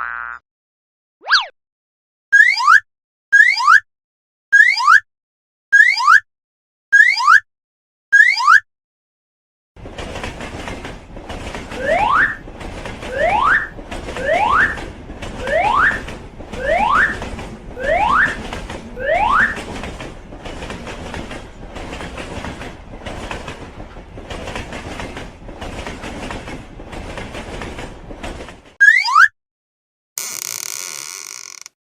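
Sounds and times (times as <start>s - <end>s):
train clickety-clack: 9.8s - 28.8s.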